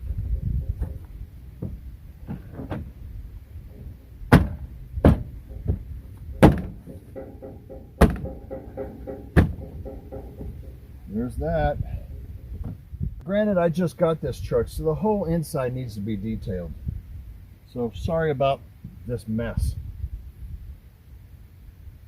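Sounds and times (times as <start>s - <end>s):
door latch clunks: 3.7s - 10.9s.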